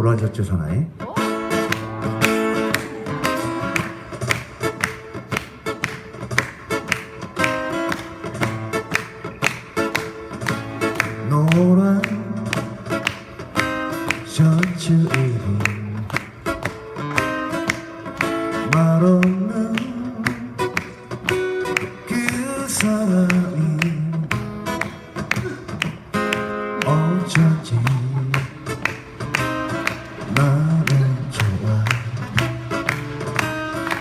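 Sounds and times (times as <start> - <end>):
acoustic guitar strumming: 0.8 - 34.0
person singing: 1.0 - 4.4, 10.9 - 13.2, 14.0 - 16.3, 18.2 - 20.9, 21.8 - 24.4, 25.3 - 33.0.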